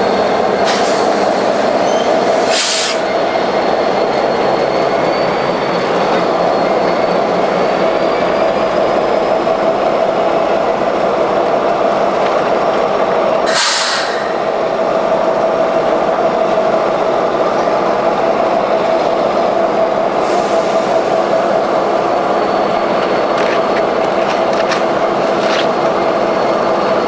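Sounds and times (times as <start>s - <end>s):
train rumbling past: 0.0s - 27.0s
steady squealing tone: 3.0s - 9.3s
burst of hiss: 13.5s - 14.3s.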